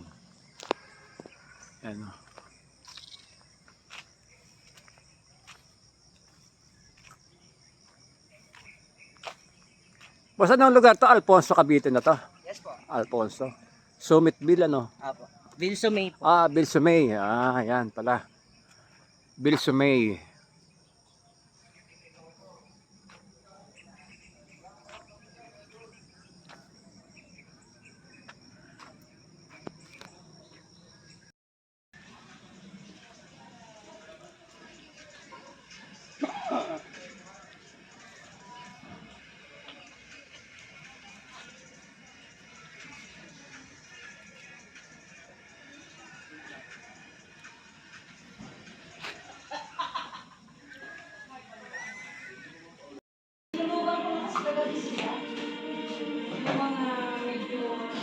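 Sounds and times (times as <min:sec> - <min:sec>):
high-pitched insect chirring: 0:00.0 - 0:07.9
crickets trilling: 0:00.0 - 0:31.3, 0:32.0 - 0:52.9.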